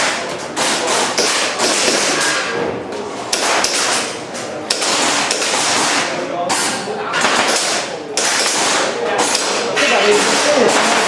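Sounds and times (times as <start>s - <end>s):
airsoft pistol shots: 7.2s - 9.6s.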